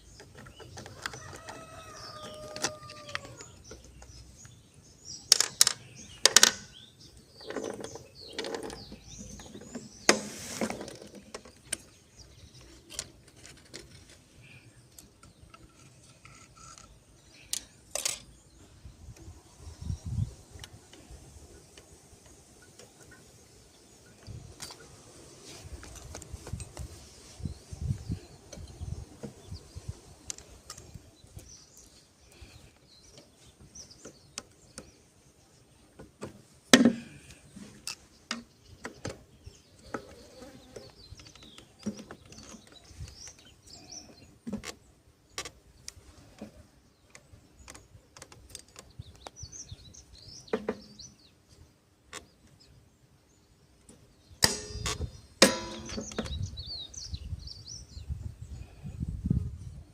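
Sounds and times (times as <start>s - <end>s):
birds chirping: 0.0s - 59.0s
sharp metal clank: 54.4s - 56.3s.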